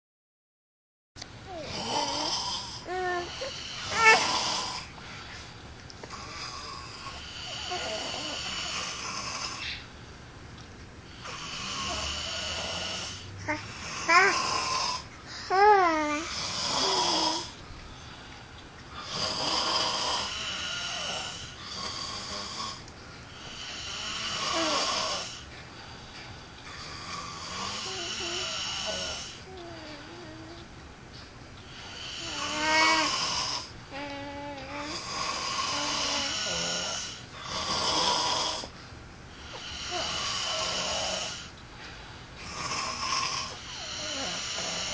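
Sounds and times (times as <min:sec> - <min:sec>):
men snoring: 0:01.5 - 0:04.9, 0:06.1 - 0:09.8, 0:11.2 - 0:17.6, 0:19.0 - 0:22.8, 0:23.4 - 0:25.4, 0:26.8 - 0:30.4, 0:31.7 - 0:38.7, 0:39.4 - 0:41.5, 0:42.4 - 0:44.9.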